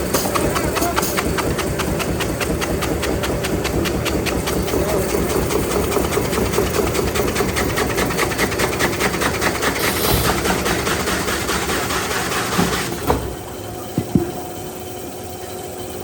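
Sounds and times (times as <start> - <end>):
fast even clatter: 0.0 - 15.1
machine mechanical drone: 0.0 - 16.0
brief hiss: 9.8 - 10.6.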